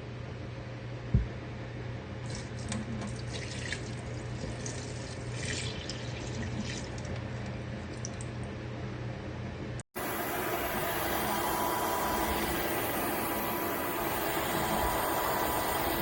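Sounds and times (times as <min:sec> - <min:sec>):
steady low hum: 0:00.0 - 0:16.0
water trickling and splashing: 0:02.4 - 0:07.2.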